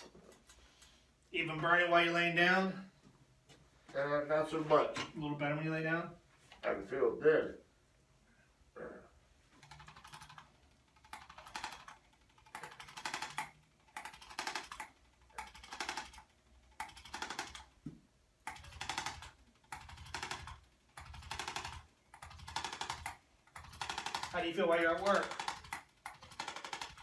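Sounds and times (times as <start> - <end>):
rapid mechanical clicking: 9.6 - 17.8, 18.4 - 27.0.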